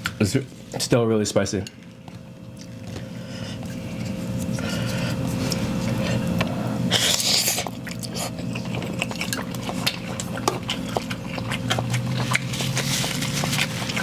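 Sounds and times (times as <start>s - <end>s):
steady low hum: 0.0s - 14.0s
chewing with wet mouth clicks: 2.0s - 3.0s, 7.1s - 14.0s
noodle slurp: 6.9s - 14.0s.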